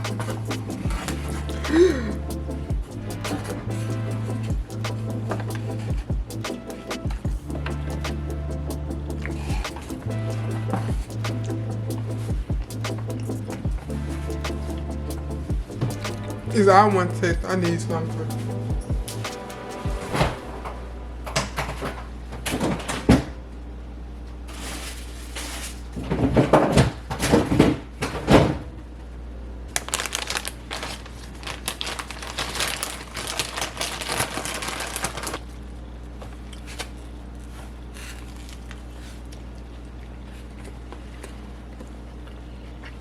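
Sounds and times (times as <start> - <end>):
steady low hum: 0.0 - 43.0
packaging crinkling: 24.5 - 26.0, 29.8 - 40.0.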